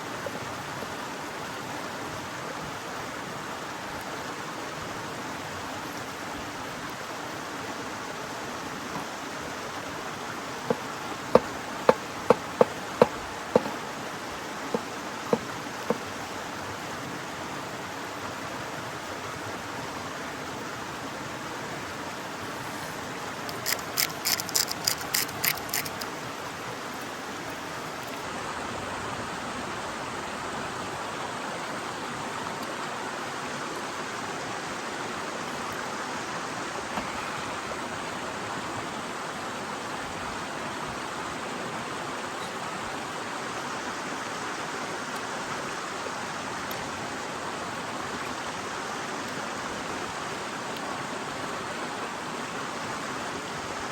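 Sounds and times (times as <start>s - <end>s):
river water rushing: 0.0s - 53.9s
sharp knocks: 11.4s - 13.8s
rattle of high clicks: 23.5s - 26.1s.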